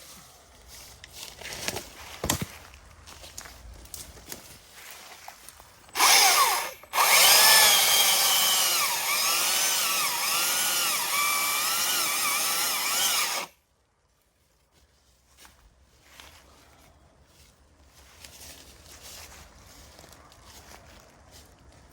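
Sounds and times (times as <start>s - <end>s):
battery chainsaw cutting wood: 5.9s - 13.6s.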